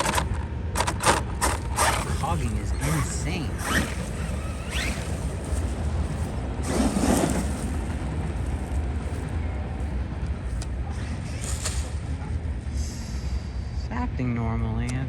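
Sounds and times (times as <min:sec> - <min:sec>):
rc truck electric motor: 0:00.0 - 0:11.8
steady low rumble: 0:00.0 - 0:15.0.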